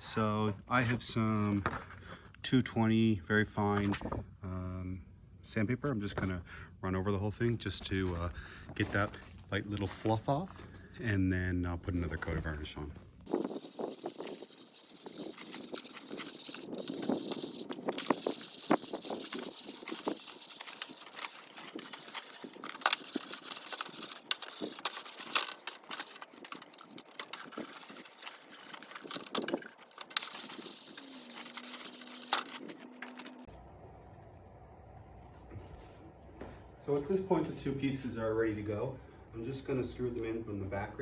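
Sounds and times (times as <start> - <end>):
sandpaper scratching on wood: 13.3 - 33.5.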